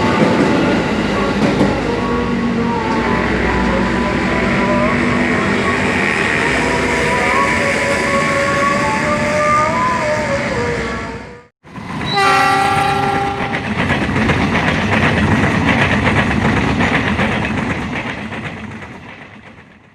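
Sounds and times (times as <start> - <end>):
train wheels clattering on rails: 0.0 - 5.2, 11.7 - 19.9
train horn: 1.3 - 13.6.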